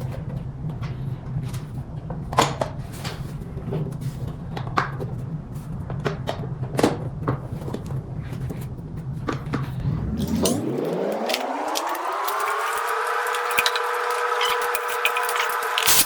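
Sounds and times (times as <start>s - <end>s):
steady low hum: 0.0s - 16.0s
clicks and knocks of parts: 9.7s - 16.0s.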